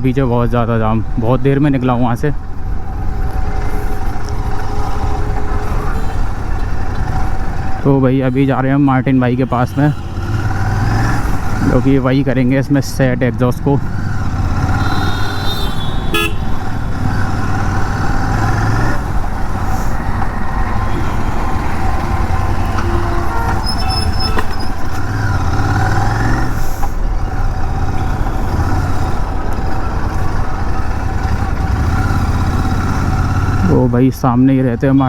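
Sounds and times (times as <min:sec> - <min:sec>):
road and traffic noise: 0:00.0 - 0:35.0
motorcycle engine running: 0:02.3 - 0:35.0
vehicle horn toots: 0:04.6 - 0:11.8, 0:14.4 - 0:17.4, 0:20.7 - 0:26.4.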